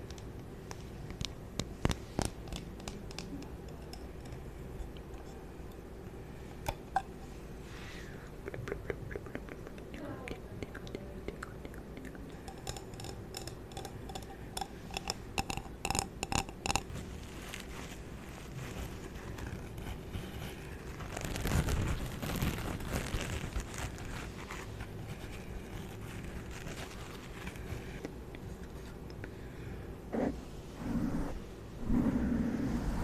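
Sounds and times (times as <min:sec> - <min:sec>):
scraping or rubbing: 0:30.1 - 0:33.0.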